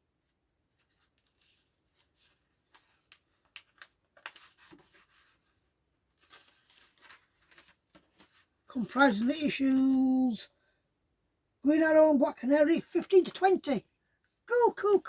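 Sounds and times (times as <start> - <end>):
book pages rustling and turning: 0.1 - 9.2.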